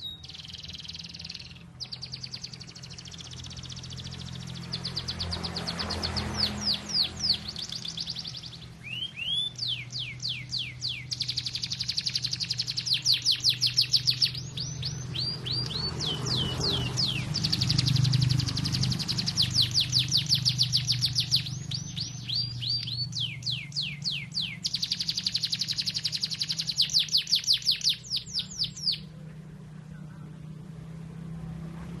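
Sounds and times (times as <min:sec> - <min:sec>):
canary singing trills: 0:00.0 - 0:30.6.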